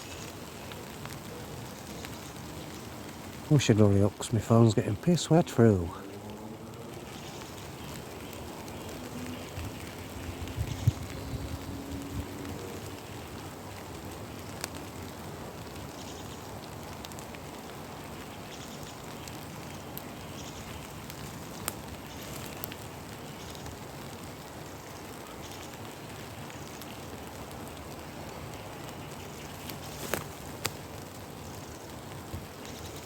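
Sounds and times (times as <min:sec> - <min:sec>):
heavy rain falling: 0:00.0 - 0:33.0.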